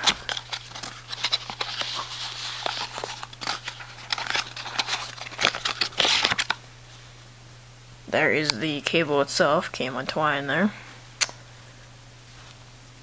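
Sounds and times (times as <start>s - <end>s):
cardboard box being opened: 0.0s - 6.6s
packaging rustling and scraping: 0.0s - 6.6s.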